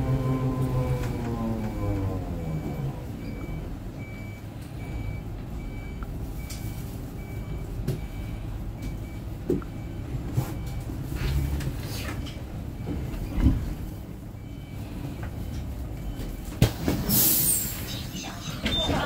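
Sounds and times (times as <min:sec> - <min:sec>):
bus low rumble: 0:00.0 - 0:19.0
high warning beeps: 0:17.5 - 0:19.0.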